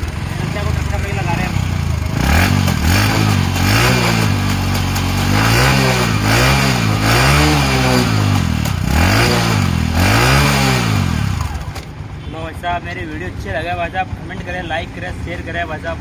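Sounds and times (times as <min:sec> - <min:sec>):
motorcycle engine revving: 0:00.0 - 0:12.1.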